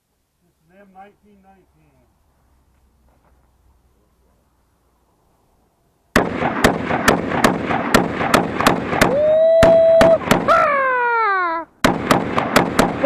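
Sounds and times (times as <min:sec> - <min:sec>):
machine gun shots: 0:06.2 - 0:10.6, 0:11.8 - 0:13.0
person whooping: 0:09.0 - 0:11.7.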